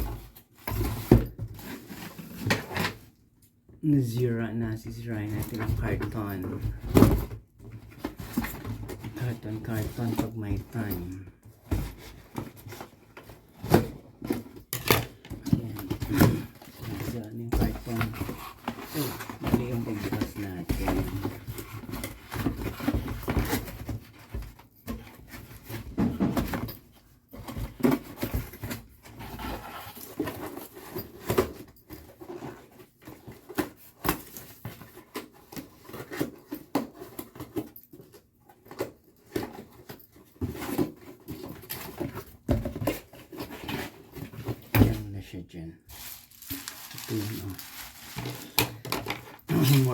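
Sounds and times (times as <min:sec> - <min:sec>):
cardboard rustling: 0:00.0 - 0:03.2, 0:05.0 - 0:45.2, 0:45.8 - 0:49.9
cardboard ripping: 0:45.9 - 0:48.6.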